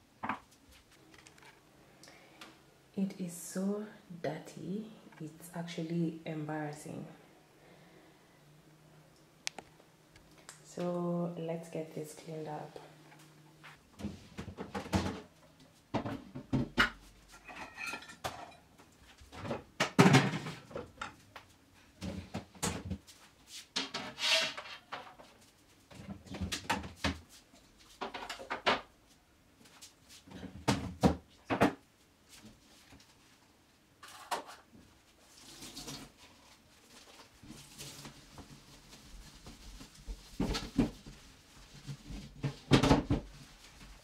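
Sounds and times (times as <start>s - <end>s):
scraping and rustling: 32.3s - 44.0s.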